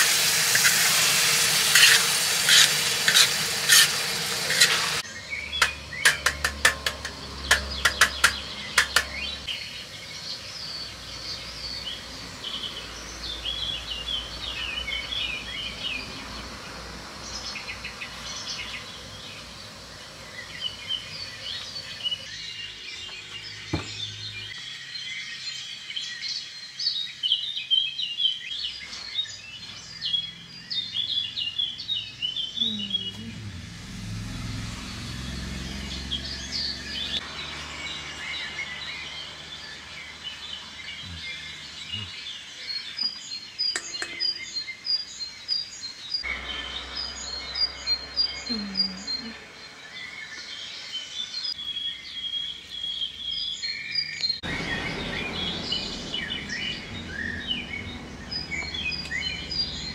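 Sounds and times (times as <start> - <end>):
small birds chirping: 0.0 - 33.6, 34.7 - 59.9.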